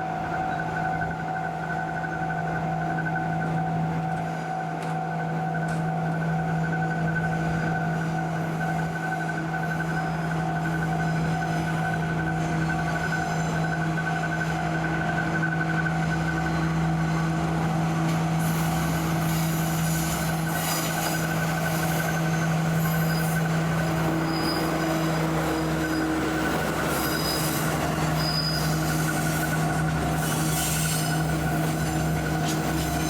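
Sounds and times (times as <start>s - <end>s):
freight train low hum: 0.0s - 33.0s
wheel squeals: 18.4s - 33.0s.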